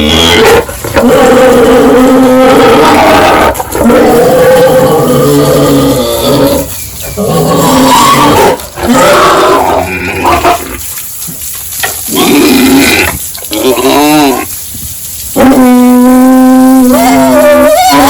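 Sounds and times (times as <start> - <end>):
pigs squealing and grunting: 0.0 - 10.9, 12.0 - 14.5, 15.4 - 18.0.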